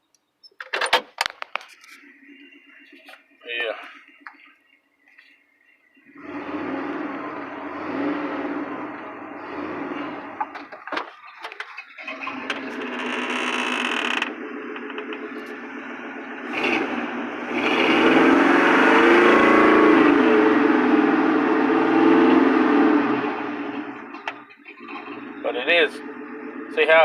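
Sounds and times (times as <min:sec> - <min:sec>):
truck engine running: 0:06.0 - 0:27.0
clicks: 0:13.9 - 0:15.6.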